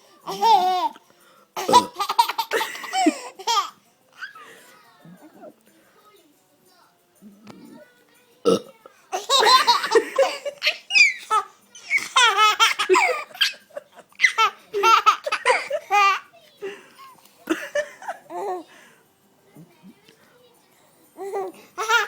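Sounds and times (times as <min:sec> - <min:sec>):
baby giggling: 0:00.3 - 0:01.0, 0:01.6 - 0:04.6, 0:09.2 - 0:18.6, 0:21.2 - 0:22.0.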